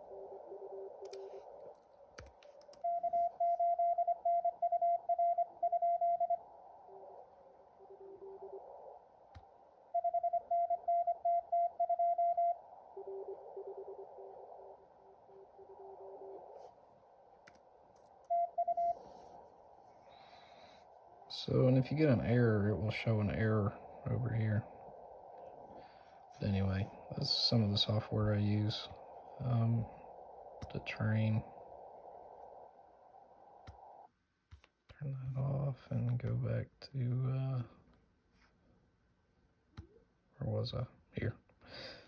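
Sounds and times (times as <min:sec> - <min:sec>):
faint low morse code: 0:00.0 - 0:34.1
radio band noise hiss: 0:18.8 - 0:34.0.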